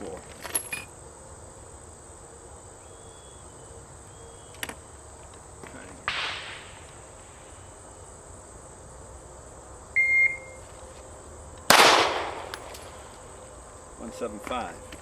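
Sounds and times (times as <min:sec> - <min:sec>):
pistol shot with echo: 0:05.8 - 0:07.8, 0:11.7 - 0:13.4
short electronic beep: 0:10.0 - 0:10.6.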